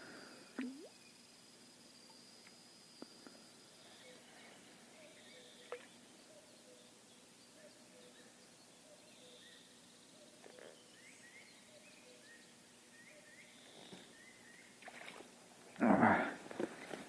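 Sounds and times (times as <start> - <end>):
faint birds chirping: 0.0 - 17.0
water splash: 0.6 - 0.9.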